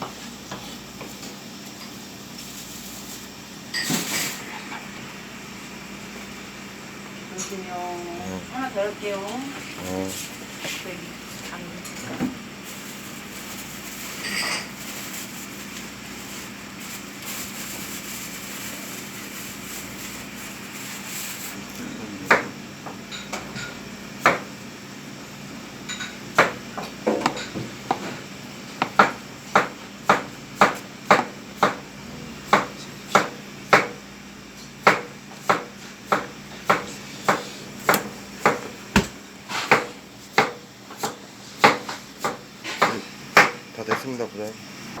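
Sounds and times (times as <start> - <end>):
steady hum: 0.0 - 45.0.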